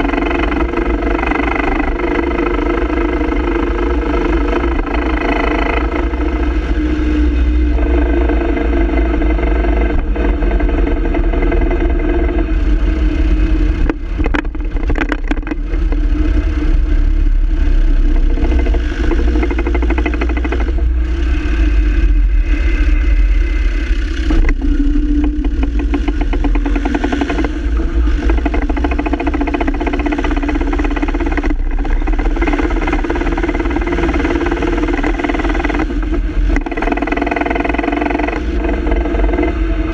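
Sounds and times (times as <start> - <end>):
propshaft joint rattling: 0.0 - 7.0, 7.7 - 16.3, 17.9 - 21.6, 24.2 - 39.9
diesel engine running: 0.0 - 39.9.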